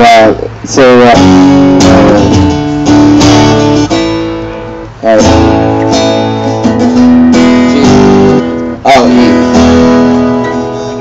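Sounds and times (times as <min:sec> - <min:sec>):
acoustic guitar strumming chords: 0:00.0 - 0:11.0.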